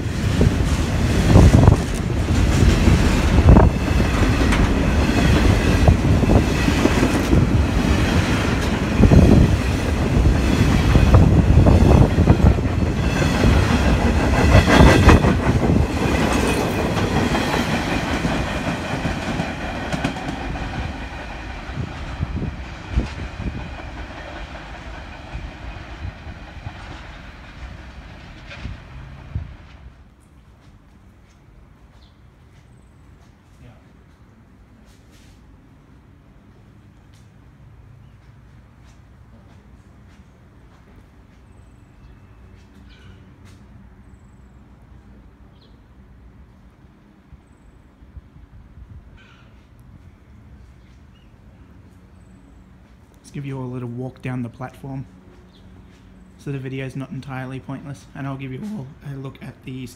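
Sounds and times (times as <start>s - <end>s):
train wheels clacking on rails: 0.1s - 29.9s.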